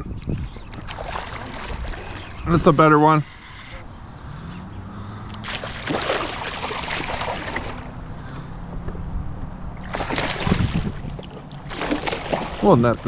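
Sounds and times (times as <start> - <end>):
fish thrashing and splashing: 0.7 - 2.4, 5.4 - 8.0, 9.8 - 13.0.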